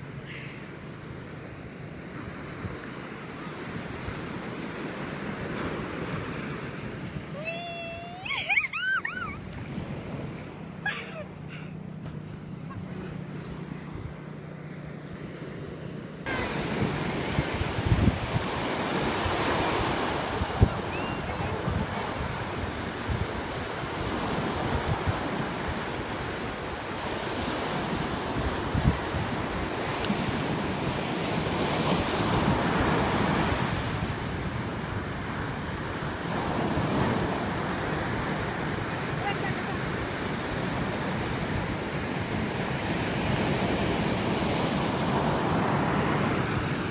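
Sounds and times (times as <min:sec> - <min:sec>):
ocean waves washing on shore: 0:00.0 - 0:46.9
wind buffeting microphone: 0:16.3 - 0:26.7, 0:27.9 - 0:30.8.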